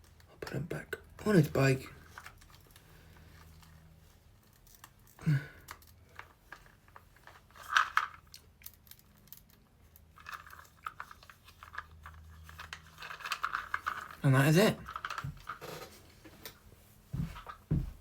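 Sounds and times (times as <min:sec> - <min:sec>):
small plastic clicks and scrapes: 0:04.4 - 0:14.2.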